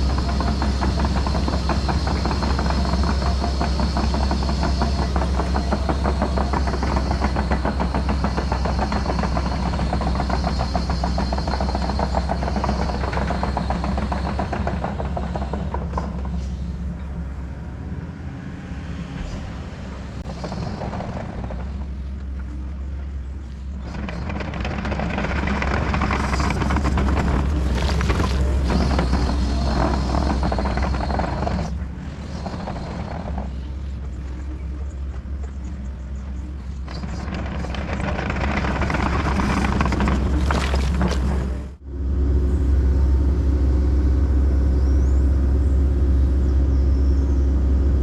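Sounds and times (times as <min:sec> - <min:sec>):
excavator diesel engine pulsing: 0:00.0 - 0:48.0.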